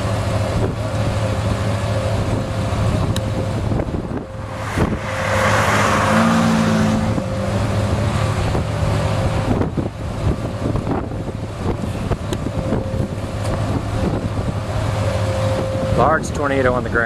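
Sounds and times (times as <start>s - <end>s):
engine humming: 0.0s - 17.0s
car passing by: 3.7s - 9.7s.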